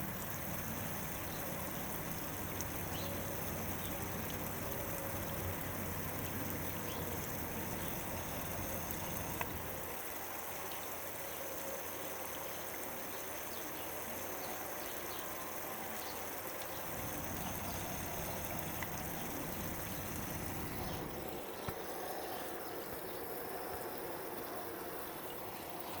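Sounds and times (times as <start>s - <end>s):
sprinkler water spray hiss: 0.0s - 26.0s
faint clicks: 8.9s - 9.7s, 17.4s - 21.8s.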